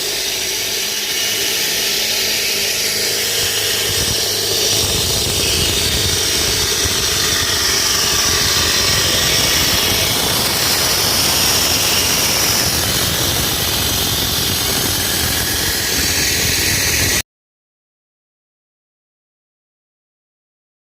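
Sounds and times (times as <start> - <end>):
concrete cutting machine whining: 0.0 - 17.2.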